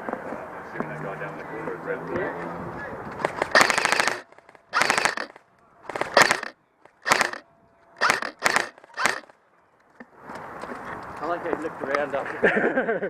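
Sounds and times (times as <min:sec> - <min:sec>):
airsoft gun firing bursts: 0:03.2 - 0:07.4, 0:08.0 - 0:09.3.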